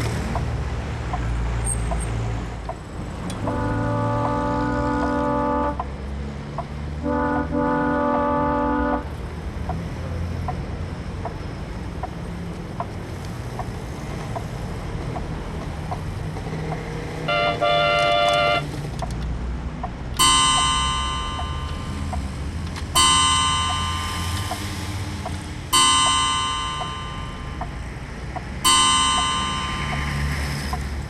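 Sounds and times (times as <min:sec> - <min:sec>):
clock ticking: 0:19.8 - 0:31.0
struck chimes ringing: 0:20.2 - 0:31.0.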